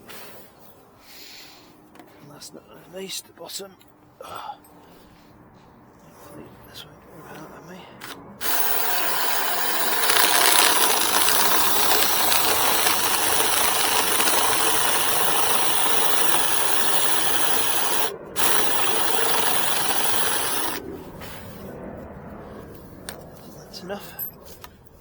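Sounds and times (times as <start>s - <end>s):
cordless drill boring into wood: 8.4s - 20.8s.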